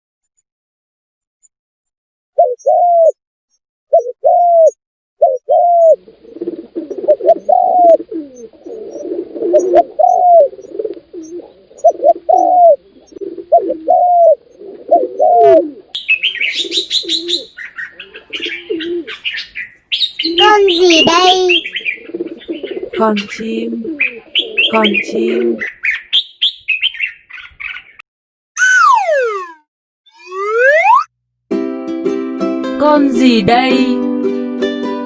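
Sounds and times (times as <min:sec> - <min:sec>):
birds calling low: 0:03.9 - 0:28.0
high quick bird chirping: 0:16.0 - 0:28.0, 0:28.6 - 0:31.1.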